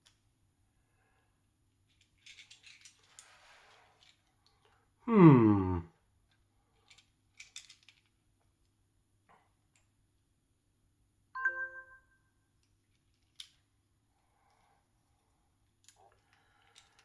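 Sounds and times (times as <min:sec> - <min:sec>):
plastic toy parts clicking: 0:01.9 - 0:03.3, 0:06.9 - 0:08.1, 0:13.0 - 0:13.6, 0:15.8 - 0:17.0.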